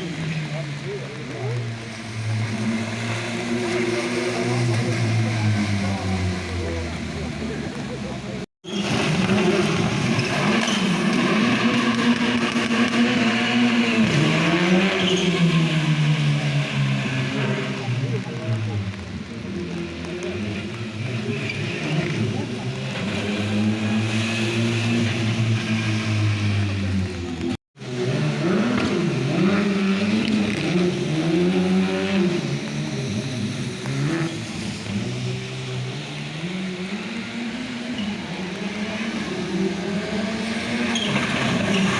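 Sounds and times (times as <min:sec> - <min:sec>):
car engine revving hard: 0:08.8 - 0:18.5, 0:20.0 - 0:41.9.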